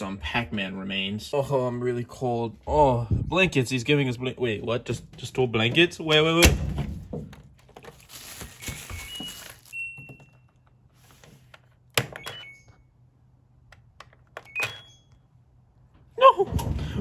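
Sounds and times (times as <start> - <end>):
rustling handling: 6.8 - 11.9
washing machine beeps: 8.7 - 10.6, 12.2 - 13.0, 14.4 - 15.2.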